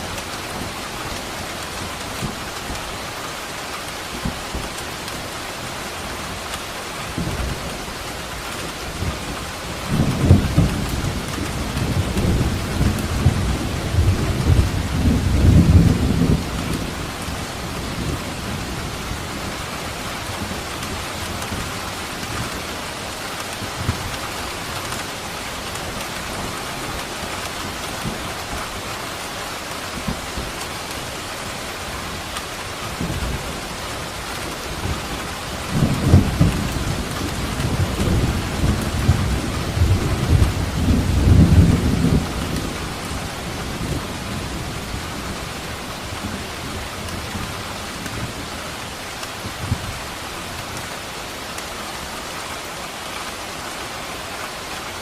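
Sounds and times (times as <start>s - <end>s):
heavy rain: 0.0s - 55.0s
thunder rumbling: 8.9s - 22.6s, 32.8s - 50.0s.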